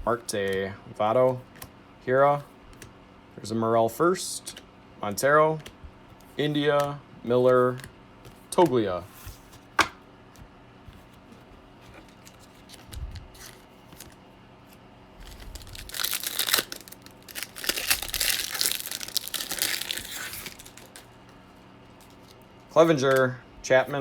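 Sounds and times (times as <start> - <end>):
wrapper torn and crinkled: 15.2 - 21.1.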